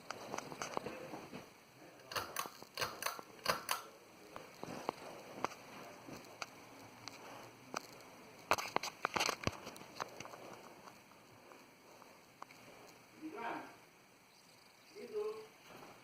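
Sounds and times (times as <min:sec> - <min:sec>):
faint steady hum: 0:00.0 - 0:16.0
ceiling fan clicking: 0:02.0 - 0:04.0.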